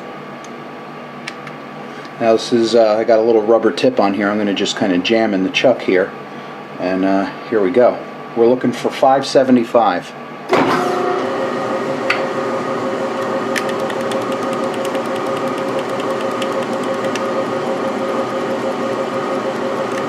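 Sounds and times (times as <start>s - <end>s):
lathe running: 11.0s - 20.0s
hand tachometer whirring: 13.1s - 20.0s.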